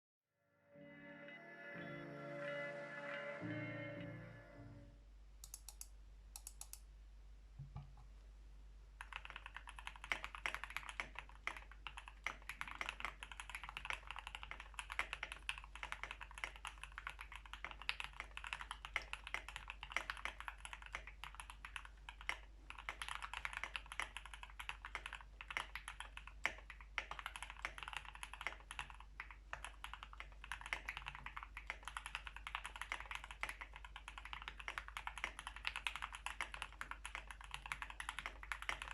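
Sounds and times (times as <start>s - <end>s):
mechanical keyboard typing: 5.4s - 6.8s, 9.0s - 38.9s.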